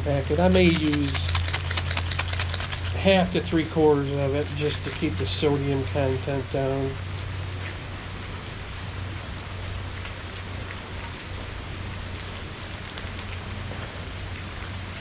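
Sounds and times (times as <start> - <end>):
low steady hum: 0.0 - 15.0
steady rain falling: 0.5 - 15.0.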